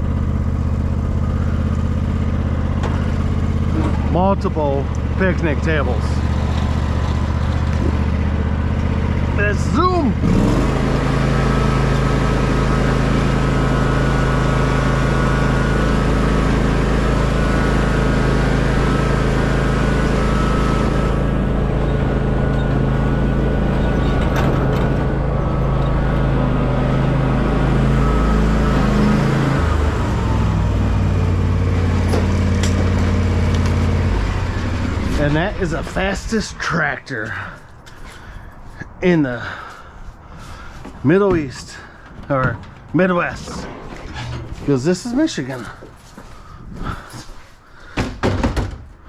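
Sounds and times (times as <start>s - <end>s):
small tractor engine running: 0.0s - 49.0s.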